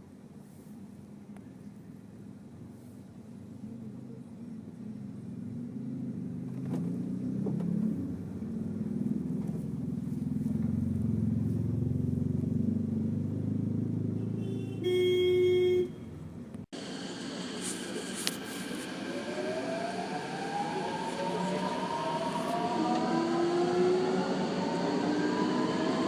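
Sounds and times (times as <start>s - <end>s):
car engine humming: 3.3s - 26.0s
car horn: 14.1s - 16.3s.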